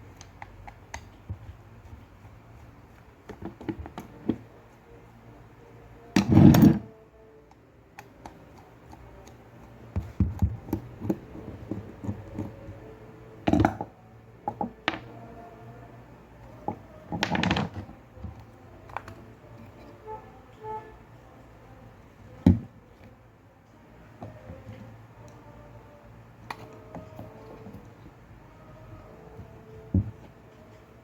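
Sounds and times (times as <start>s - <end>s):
parts clattering: 16.4s - 20.0s.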